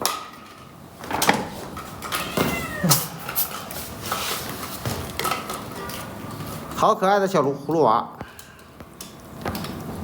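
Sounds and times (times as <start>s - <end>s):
cat meowing: 2.1s - 3.2s.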